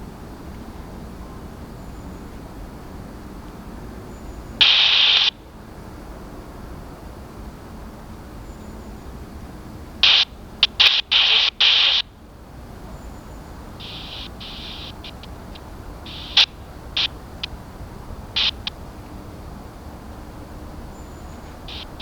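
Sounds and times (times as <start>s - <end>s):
low background hum: 0.0s - 22.0s
sharp clicks: 4.6s - 5.3s, 10.0s - 12.0s, 13.8s - 17.5s, 18.4s - 18.7s, 21.7s - 22.0s
radio static bursts: 4.6s - 5.4s, 10.0s - 12.1s, 13.8s - 17.5s, 18.3s - 18.7s, 21.7s - 22.0s.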